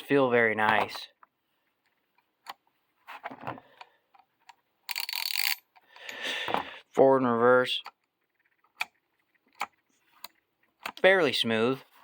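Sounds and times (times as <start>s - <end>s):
ratchet clicking: 4.9s - 5.6s.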